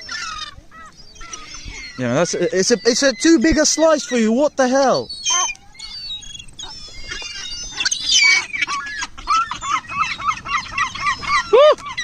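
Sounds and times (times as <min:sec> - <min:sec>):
seagulls calling: 0:00.0 - 0:12.0.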